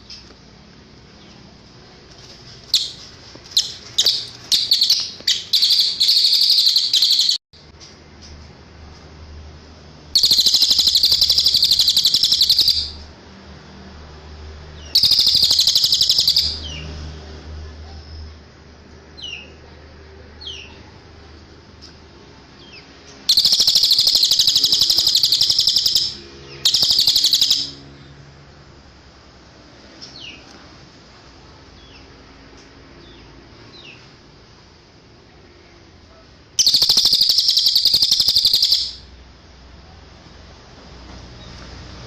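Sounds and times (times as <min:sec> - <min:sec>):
songbird trilling: 0:02.8 - 0:07.4, 0:10.2 - 0:13.0, 0:14.8 - 0:16.8, 0:23.3 - 0:27.8, 0:36.6 - 0:39.1.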